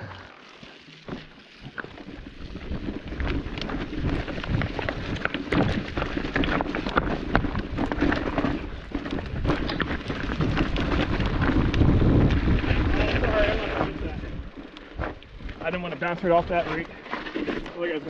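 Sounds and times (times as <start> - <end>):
tyres crunching over rocks: 0.3 - 18.0
bike rattling and knocking: 1.0 - 18.0.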